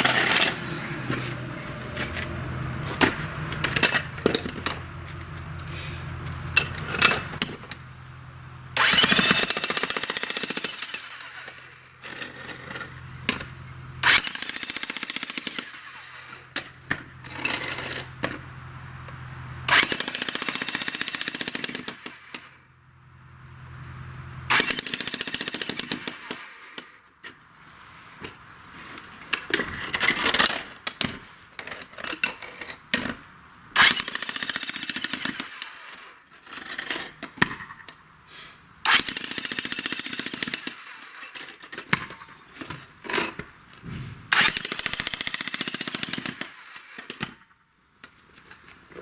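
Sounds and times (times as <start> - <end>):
jackhammer breaking concrete: 0.0 - 1.2, 2.9 - 4.8, 6.6 - 7.8, 8.8 - 18.4, 19.7 - 22.6, 24.5 - 27.0, 33.8 - 37.8, 38.8 - 47.4
steady low hum: 0.0 - 9.6, 22.6 - 24.5, 43.6 - 44.6
knocks and clatter: 43.8 - 44.5.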